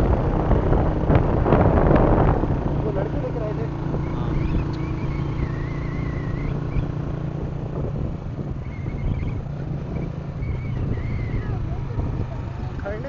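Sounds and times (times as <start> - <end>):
vehicle engine drone: 0.0 - 13.0.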